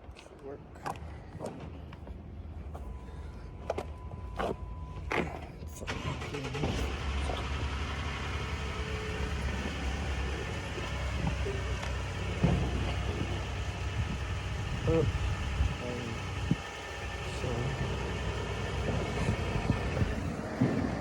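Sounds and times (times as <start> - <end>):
car engine idling: 0.8 - 21.0.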